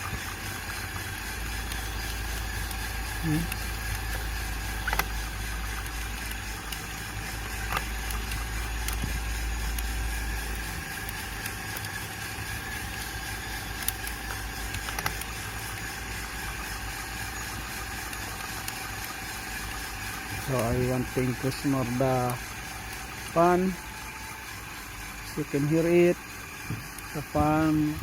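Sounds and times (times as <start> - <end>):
coffee beans popping: 0.0 - 23.8
coffee roaster running: 0.0 - 28.0
roast fan blowing: 0.0 - 28.0.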